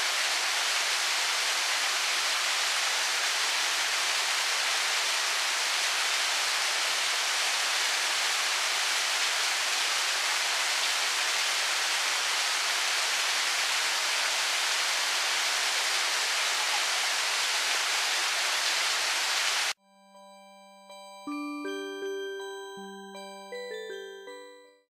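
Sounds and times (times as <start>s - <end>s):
waterfall rushing: 0.0s - 19.8s
soft chime-like music notes: 19.8s - 24.9s.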